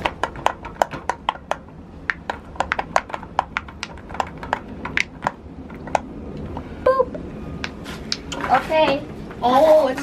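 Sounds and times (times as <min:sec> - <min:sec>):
pop-it toy bubbles popping: 0:00.0 - 0:06.1.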